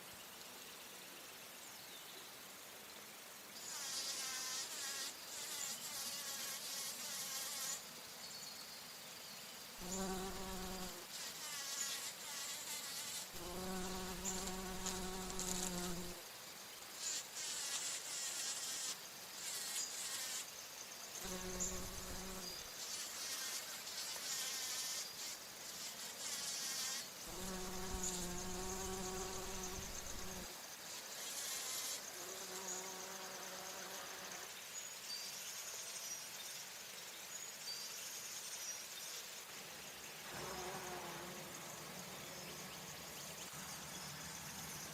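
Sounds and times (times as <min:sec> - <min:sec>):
bumblebee buzzing in flight: 0:03.6 - 0:07.8, 0:09.8 - 0:16.2, 0:17.0 - 0:20.5, 0:21.2 - 0:34.5, 0:40.3 - 0:42.9.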